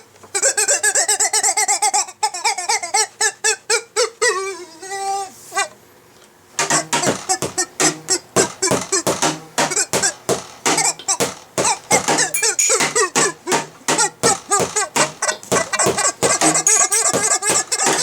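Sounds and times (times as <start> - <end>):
back scratcher squeaking: 6.6 - 18.0.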